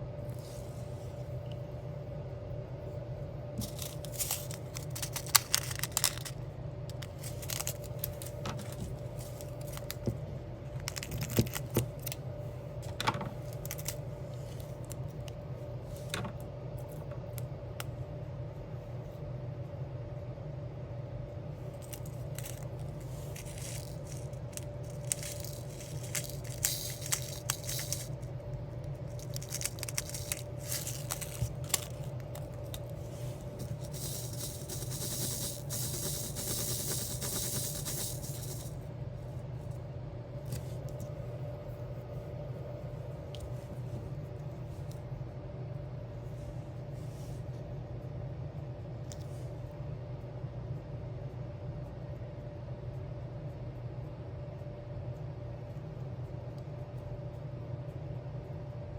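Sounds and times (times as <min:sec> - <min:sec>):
steady low hum: 0:00.0 - 0:58.9
plastic gems clicking: 0:03.6 - 0:06.4, 0:23.4 - 0:28.3, 0:29.1 - 0:32.8.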